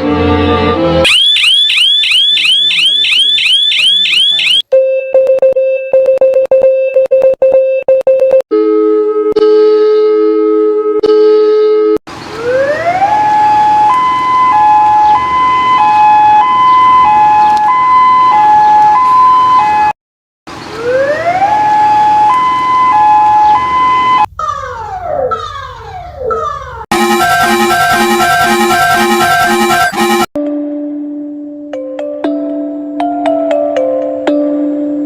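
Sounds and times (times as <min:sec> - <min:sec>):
emergency siren wailing: 0:01.0 - 0:04.6, 0:12.3 - 0:20.0, 0:20.7 - 0:25.3, 0:26.9 - 0:30.4.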